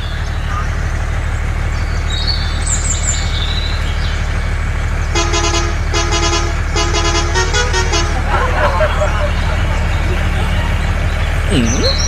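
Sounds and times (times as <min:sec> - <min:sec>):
low engine drone: 0:00.0 - 0:12.0
vehicle horn honking: 0:05.0 - 0:10.8.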